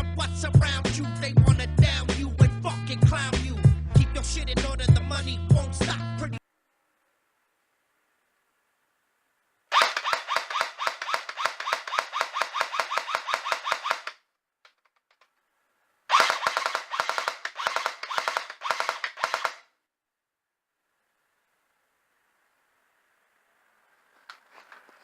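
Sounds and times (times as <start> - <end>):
airsoft gun firing full auto: 9.7 - 14.2, 16.1 - 19.7.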